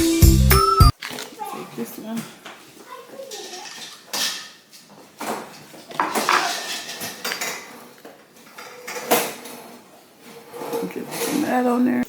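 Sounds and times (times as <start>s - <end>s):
plates and cutlery clinking: 3.2s - 12.0s.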